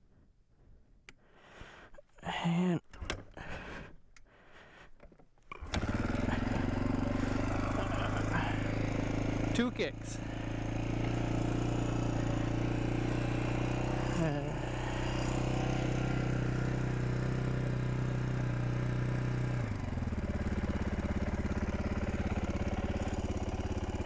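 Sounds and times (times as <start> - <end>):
motorcycle engine idling: 5.7 - 24.0.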